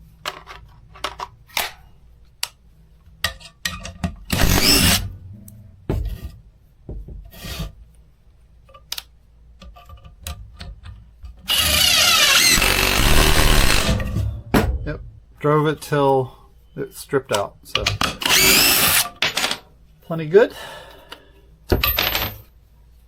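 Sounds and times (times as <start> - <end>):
cordless impact driver: 4.3 - 5.0, 11.5 - 14.2, 18.2 - 19.0.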